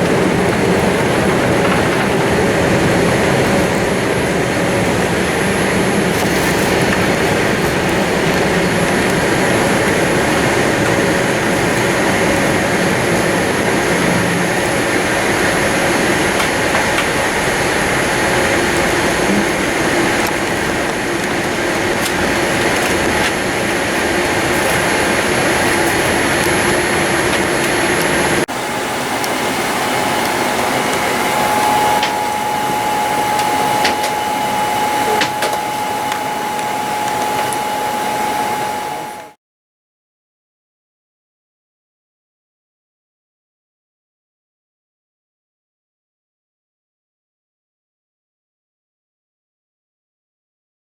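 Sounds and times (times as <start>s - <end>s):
airplane cabin rumble and hiss: 0.0s - 39.4s
faint high tone: 28.5s - 39.4s.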